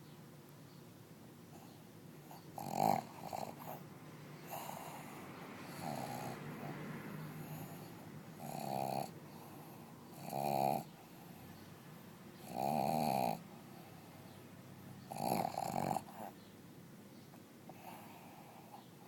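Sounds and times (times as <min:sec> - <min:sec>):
dog snoring: 0:01.5 - 0:03.8, 0:04.4 - 0:11.5, 0:12.4 - 0:14.1, 0:15.0 - 0:16.4, 0:17.7 - 0:19.0.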